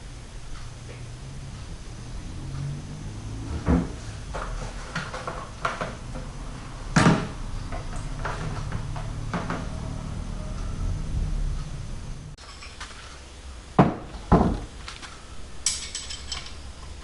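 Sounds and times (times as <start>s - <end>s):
low steady hum: 0.0s - 17.0s
clunks of tools being handled: 14.4s - 16.8s.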